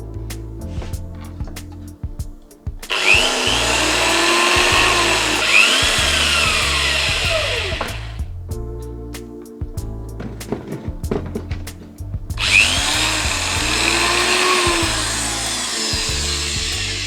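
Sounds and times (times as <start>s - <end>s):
background music: 0.0s - 17.0s
electric drill boring: 2.9s - 8.2s, 12.4s - 17.0s.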